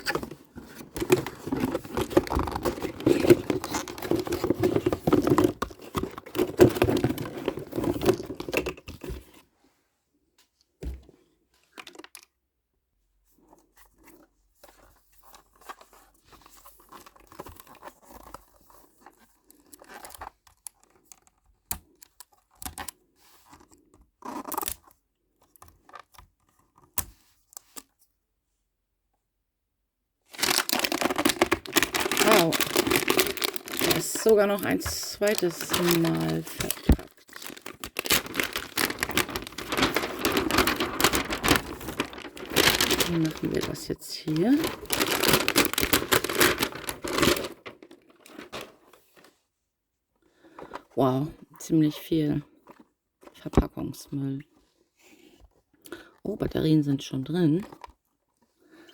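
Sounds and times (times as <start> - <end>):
packaging tearing and crinkling: 0.0 - 8.8, 30.3 - 49.3
soft rustles: 30.5 - 49.5.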